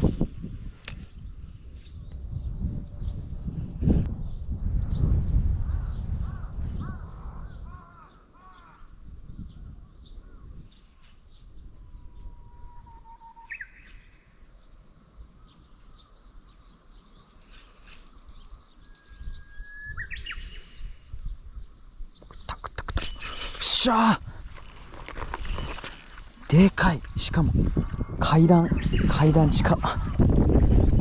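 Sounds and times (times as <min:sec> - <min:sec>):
birds calling: 0:05.7 - 0:31.0
long whistled bird call: 0:12.0 - 0:14.0, 0:19.0 - 0:20.8.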